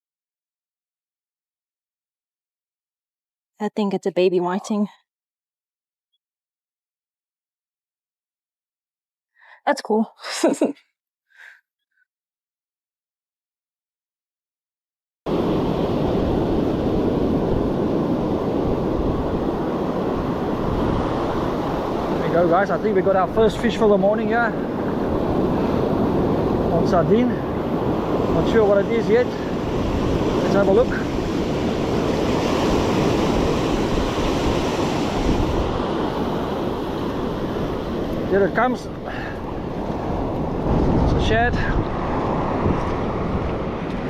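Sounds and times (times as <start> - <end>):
ocean surf: 15.3 - 44.0
wind buffeting microphone: 15.3 - 44.0.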